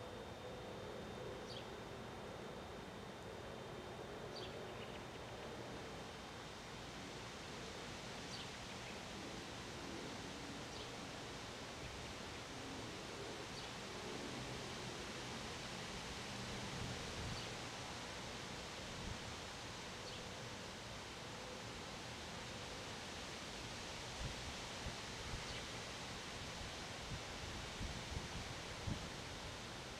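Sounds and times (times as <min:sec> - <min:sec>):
wind with rustling: 0:23.4 - 0:29.9.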